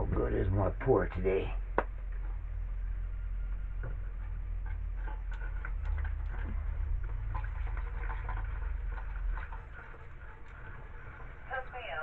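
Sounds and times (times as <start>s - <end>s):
low steady rumble: 0.0s - 12.0s
gasoline pouring into fuel tank: 5.4s - 11.5s.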